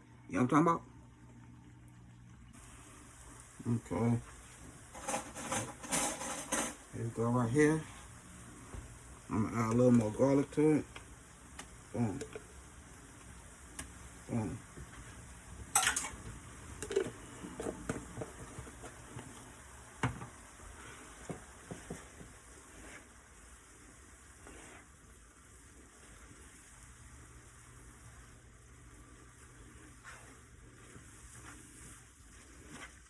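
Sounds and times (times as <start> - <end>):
food sizzling faintly: 0.0 - 33.0
utensil clinking against pan: 15.8 - 16.2.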